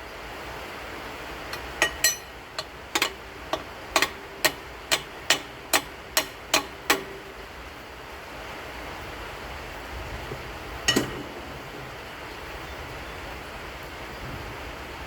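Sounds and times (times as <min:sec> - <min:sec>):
metal-on-metal taps: 0:01.5 - 0:07.4, 0:10.9 - 0:11.9.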